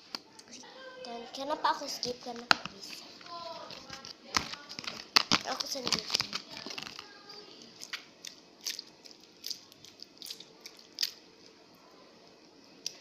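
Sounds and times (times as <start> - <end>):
slime squelching and popping: 2.3 - 11.2.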